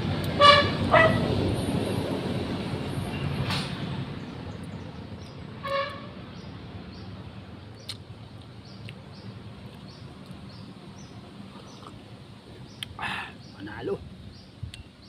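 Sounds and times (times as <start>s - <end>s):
horn toot: 0.3s - 1.4s, 5.6s - 6.2s.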